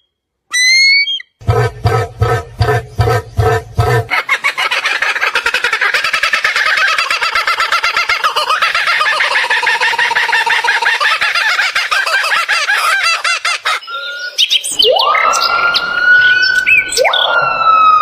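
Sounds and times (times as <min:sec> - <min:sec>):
flock of birds chirping: 0:01.4 - 0:17.4
steady whistled tone: 0:13.8 - 0:18.0.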